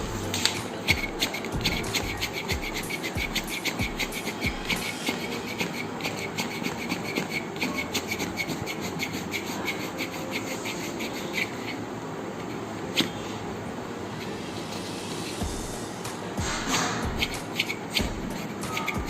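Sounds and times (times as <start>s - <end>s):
hands rubbing skin: 0.2s - 9.8s.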